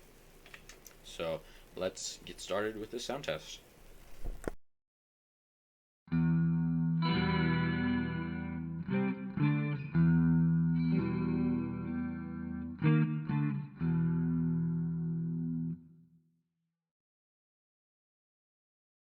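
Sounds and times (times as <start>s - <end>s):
electric guitar chords strummed: 6.1s - 16.0s.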